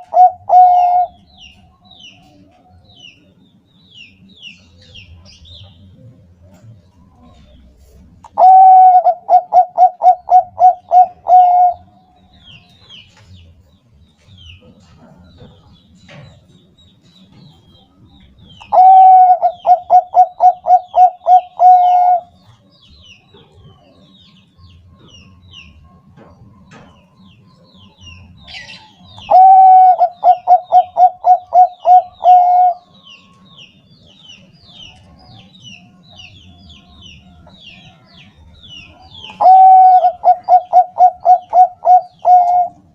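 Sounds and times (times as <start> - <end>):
dove cooing: 0.0 - 1.2, 7.2 - 12.0, 18.6 - 22.4, 28.4 - 32.9, 38.8 - 42.9
small birds chirping: 0.0 - 42.9.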